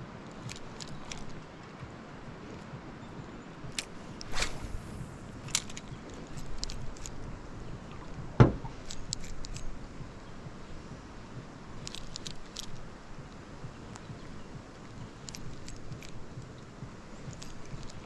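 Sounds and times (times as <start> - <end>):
steady low rumble: 0.0 - 18.0
metallic clicks of fishing gear: 0.2 - 1.5, 3.6 - 7.4, 8.7 - 9.8, 11.8 - 14.1, 14.9 - 18.0
dull thump against boat: 8.4 - 8.7.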